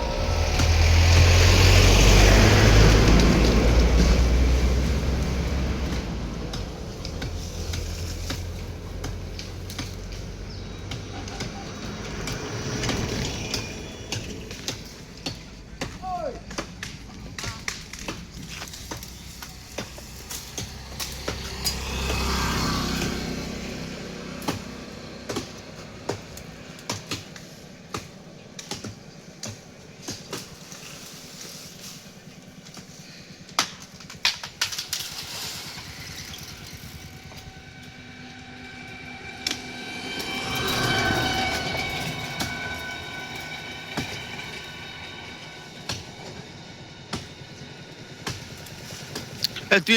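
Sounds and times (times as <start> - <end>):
steady multi-tone whine: 0.0 - 8.7, 11.1 - 15.8, 24.6 - 49.9
motor vehicle passing by: 0.0 - 15.6, 18.5 - 34.2, 34.8 - 49.9.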